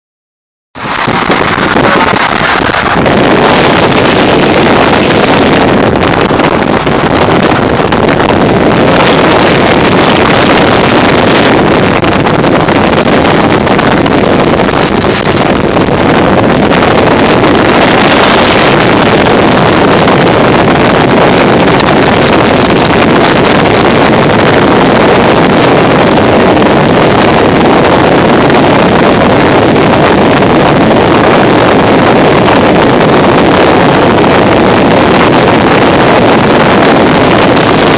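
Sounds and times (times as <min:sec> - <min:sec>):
wind noise on microphone: 0:00.7 - 0:37.9
motorcycle engines running: 0:01.0 - 0:26.2, 0:36.5 - 0:37.9.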